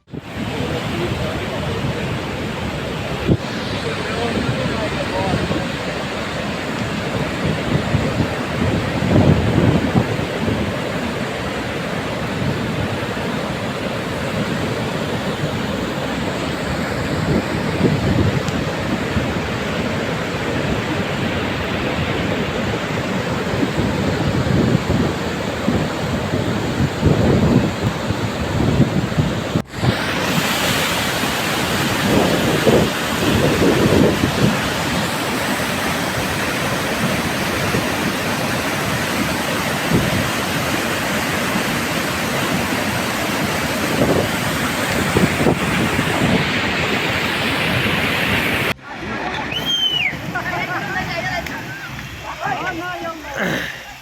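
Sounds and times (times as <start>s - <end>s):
flood water rushing: 0.0s - 54.0s
wind buffeting microphone: 0.0s - 54.0s.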